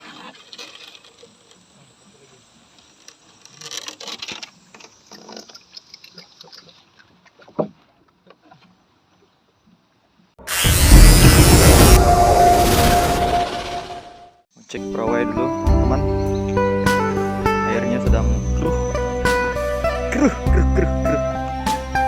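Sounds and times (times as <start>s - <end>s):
small water splashes: 4.3s - 9.9s
very loud noisy sound: 10.4s - 14.4s.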